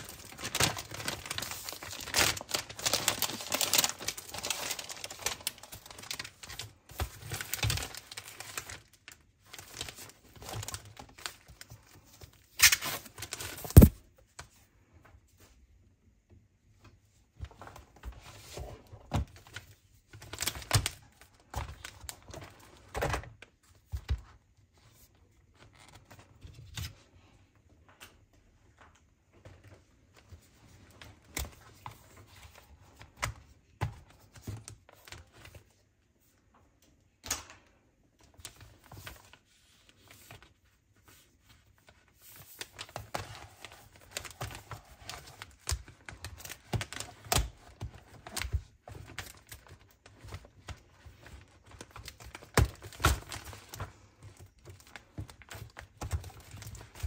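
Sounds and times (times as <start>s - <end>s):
packaging rustling and tearing: 0.0s - 14.1s, 38.3s - 57.0s.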